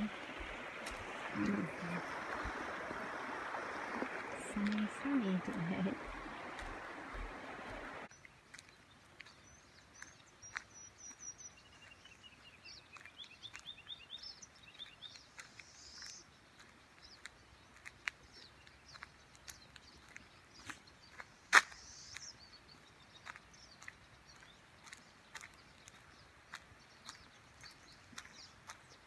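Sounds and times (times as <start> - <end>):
birds chirping: 0.0 - 8.1
stream water rushing: 0.0 - 8.1.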